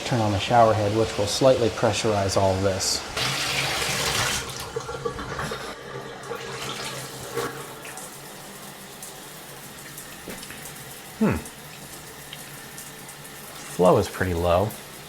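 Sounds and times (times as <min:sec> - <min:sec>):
shower head spraying water: 0:11.8 - 0:15.0.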